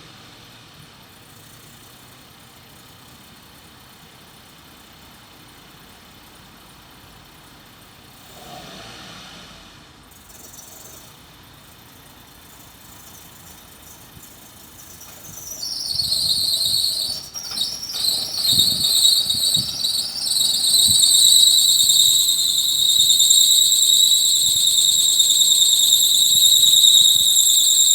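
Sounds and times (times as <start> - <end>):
high-pitched car squeal: 14.9 - 27.9.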